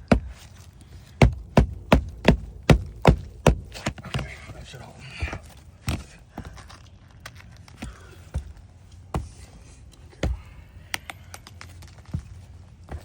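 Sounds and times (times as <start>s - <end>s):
hammer knocking nail: 1.2s - 3.7s.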